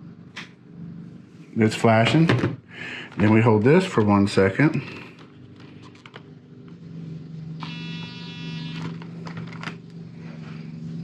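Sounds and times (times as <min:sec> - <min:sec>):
low electronic hum: 0:00.0 - 0:11.0.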